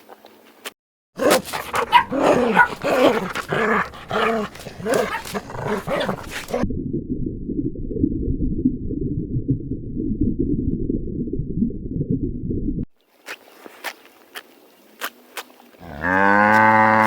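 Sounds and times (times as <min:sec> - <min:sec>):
dog barking: 0:01.2 - 0:06.6
low rumble: 0:06.6 - 0:12.9.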